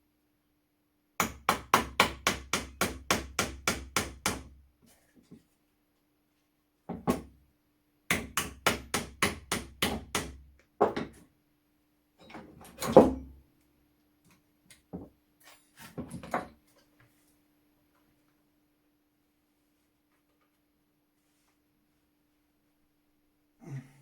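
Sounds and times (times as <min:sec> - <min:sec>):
hammer tapping on metal: 0:08.1 - 0:10.4.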